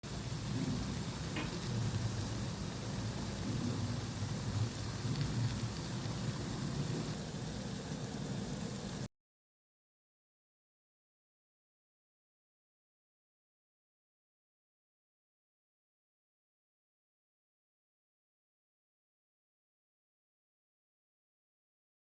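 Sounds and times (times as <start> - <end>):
food sizzling in hot oil: 0.0 - 9.1.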